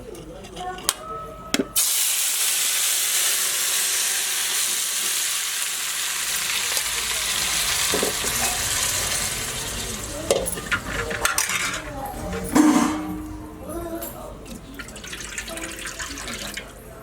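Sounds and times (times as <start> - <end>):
hot oil sizzling: 1.8 - 12.3.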